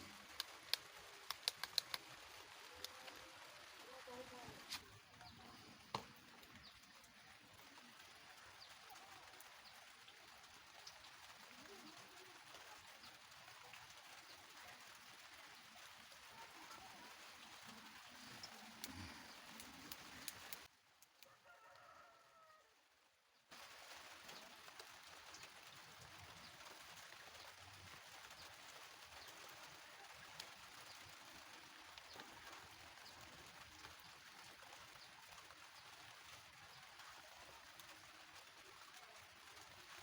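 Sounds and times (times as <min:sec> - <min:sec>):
faint rooster crow: 0:21.2 - 0:23.0.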